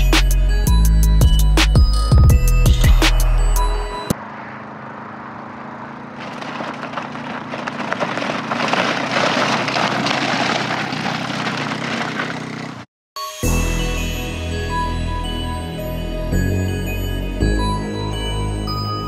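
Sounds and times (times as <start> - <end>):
small atv engine running: 4.1 - 12.9
rough crackly noise: 5.9 - 12.9.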